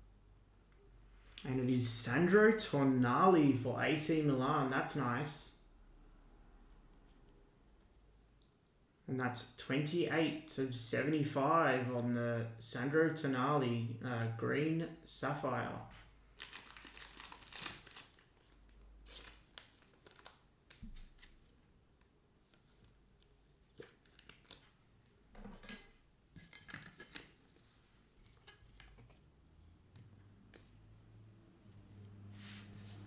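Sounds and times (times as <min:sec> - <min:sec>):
card packaging rustling and clicking: 0:16.4 - 0:24.8.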